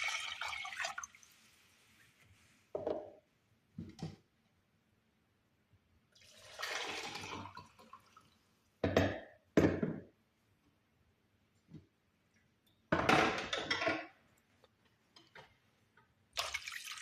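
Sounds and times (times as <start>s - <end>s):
water poured into saucepan: 0.0s - 1.6s, 6.2s - 8.4s, 16.4s - 17.0s
kitchenware knocking down: 12.9s - 14.1s.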